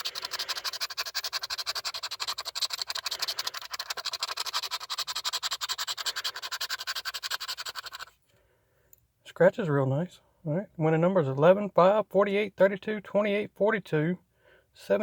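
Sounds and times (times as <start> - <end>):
scratching lottery ticket coating: 0.0 - 8.1.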